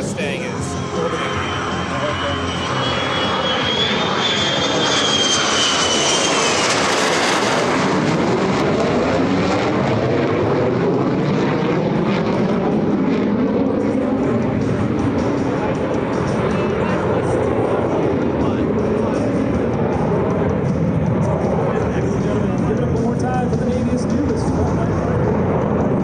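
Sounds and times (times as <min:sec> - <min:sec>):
high wavering whine: 0:00.0 - 0:11.2
aircraft engine rush and rumble: 0:00.0 - 0:26.0.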